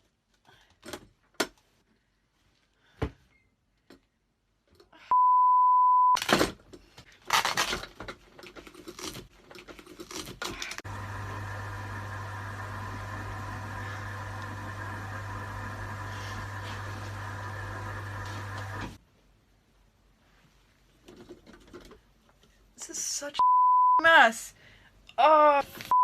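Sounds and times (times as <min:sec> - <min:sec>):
high alarm beep: 0:05.1 - 0:06.2.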